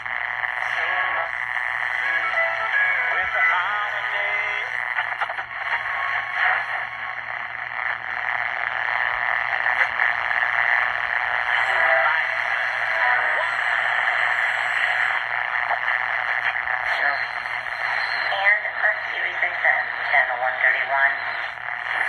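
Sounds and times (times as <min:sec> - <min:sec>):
radio static hiss: 0:00.0 - 0:22.0
radio whistles: 0:00.0 - 0:22.0.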